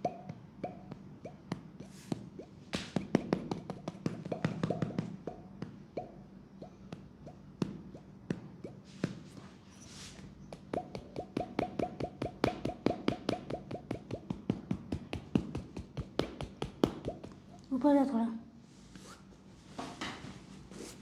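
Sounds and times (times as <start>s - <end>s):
massage gun strikes on leg: 2.7s - 5.2s, 10.5s - 17.4s.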